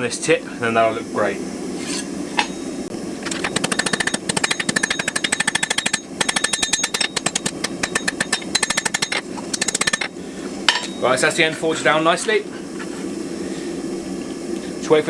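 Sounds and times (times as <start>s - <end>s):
hammer striking steel on anvil: 1.8s - 11.2s.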